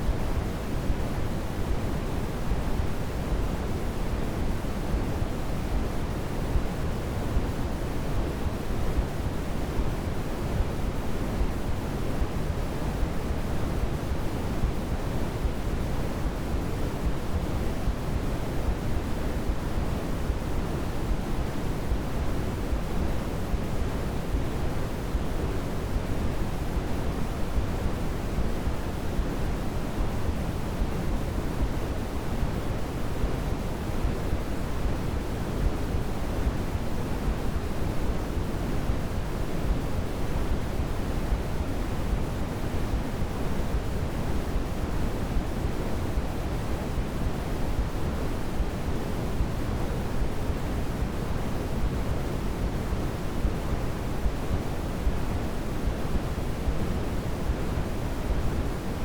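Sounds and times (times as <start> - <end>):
steady pink noise hiss: 0.0 - 59.0.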